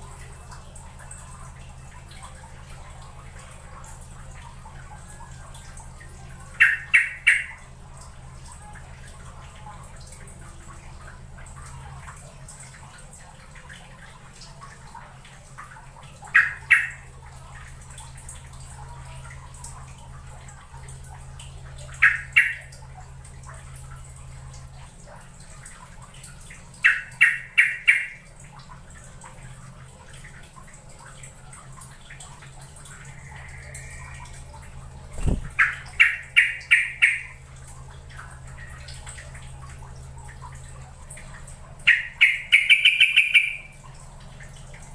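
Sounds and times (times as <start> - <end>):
steady low hum: 0.0 - 44.9
bulbul calling: 6.6 - 7.6, 16.3 - 17.0, 22.0 - 22.7, 26.8 - 28.2, 35.1 - 37.4, 41.9 - 43.8.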